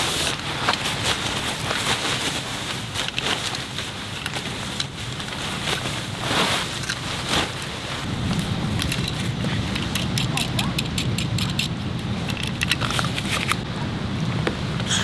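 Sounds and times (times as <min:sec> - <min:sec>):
raindrop impacts: 0:08.0 - 0:14.9
heavy rain pouring: 0:08.0 - 0:15.0.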